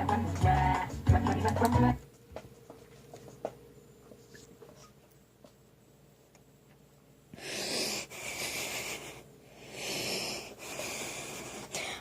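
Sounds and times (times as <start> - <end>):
man breathing heavily: 7.3 - 12.0.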